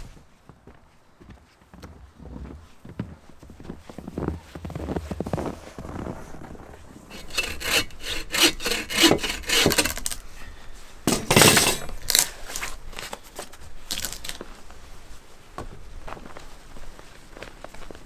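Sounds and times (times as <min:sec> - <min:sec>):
hand saw cutting log: 0:07.1 - 0:10.4, 0:11.1 - 0:13.2, 0:13.9 - 0:14.4.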